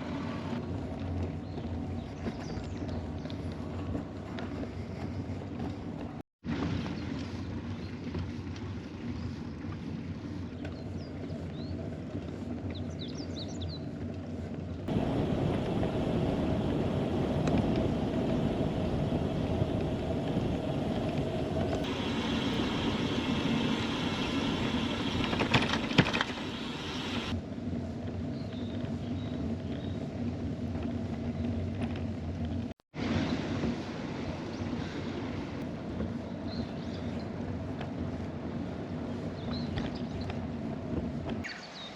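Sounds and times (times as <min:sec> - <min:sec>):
wind on microphone: 0:00.0 - 0:32.0
bicycle riding noise: 0:00.0 - 0:41.9.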